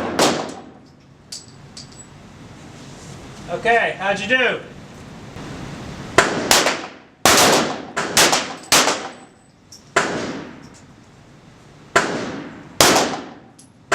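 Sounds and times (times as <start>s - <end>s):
pistol shots echoing: 6.2s - 9.2s, 11.9s - 13.5s.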